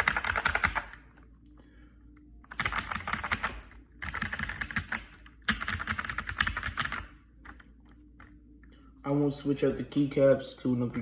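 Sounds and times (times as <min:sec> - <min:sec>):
mechanical keyboard typing: 0:00.0 - 0:01.0, 0:02.5 - 0:07.6.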